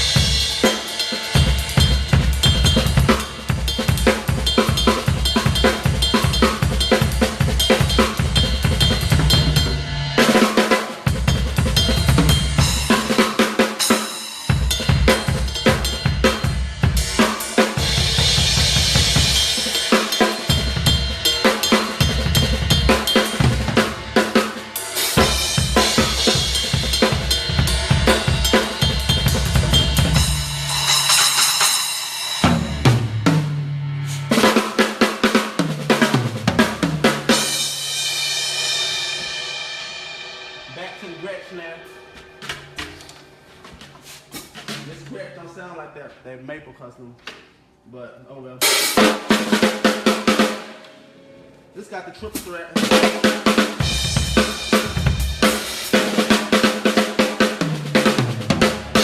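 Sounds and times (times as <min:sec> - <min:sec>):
cymbal crashes: 0:00.0 - 0:35.3, 0:37.2 - 0:43.4
acoustic drum kit: 0:00.0 - 0:45.6, 0:48.6 - 0:51.1, 0:52.1 - 0:59.0.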